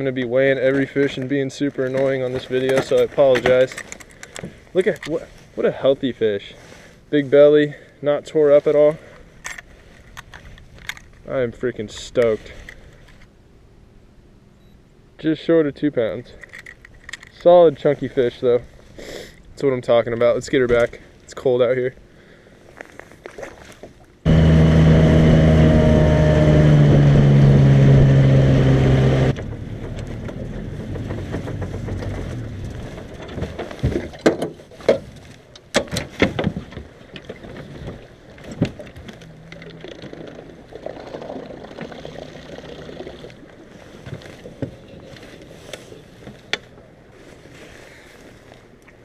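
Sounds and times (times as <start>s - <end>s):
faint hum: 0.0s - 23.2s
boat motor running: 24.2s - 34.1s, 37.2s - 47.4s
knocks and clicks on boat: 29.1s - 43.4s, 44.0s - 45.5s.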